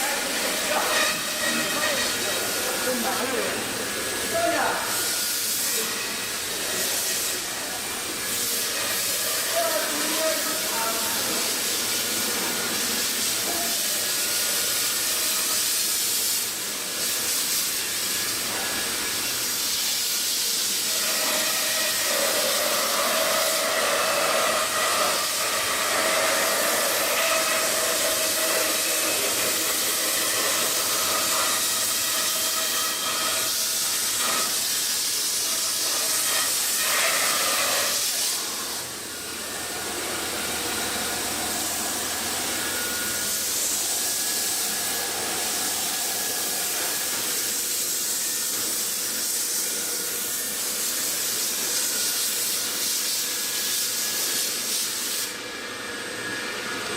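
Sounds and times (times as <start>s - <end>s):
foam-cutting router running: 0.0s - 15.5s, 20.8s - 50.2s.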